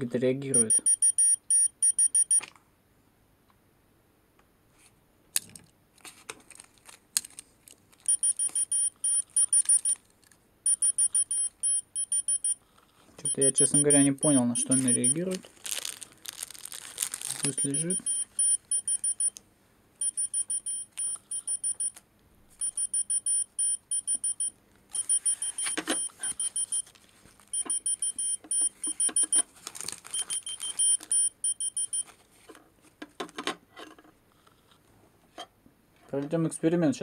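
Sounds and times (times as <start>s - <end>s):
key-finder keychain beeping: 0.5s - 2.4s, 8.1s - 10.0s, 10.7s - 12.6s, 13.2s - 15.3s, 17.4s - 19.3s, 20.0s - 22.0s, 22.6s - 26.9s, 27.6s - 29.4s, 30.1s - 32.1s.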